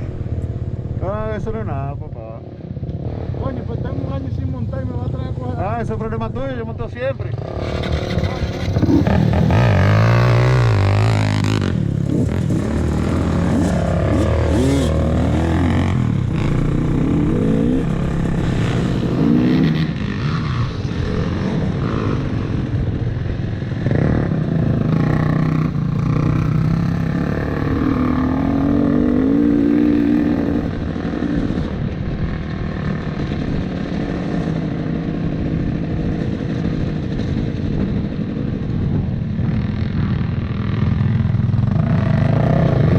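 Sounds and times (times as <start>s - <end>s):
dirt bike engine revving: 7.2s - 22.7s, 23.7s - 31.6s.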